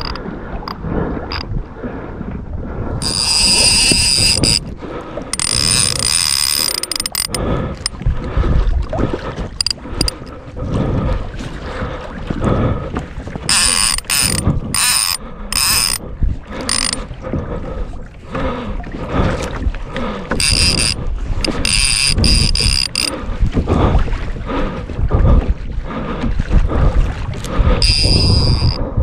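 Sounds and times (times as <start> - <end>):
fishing reel drag buzzing: 0.0 - 0.2, 3.0 - 4.7, 5.3 - 7.9, 9.6 - 10.3, 13.5 - 16.0, 16.6 - 17.0, 20.3 - 23.1, 27.8 - 28.8
water noise: 0.0 - 29.0
wind: 0.0 - 29.0.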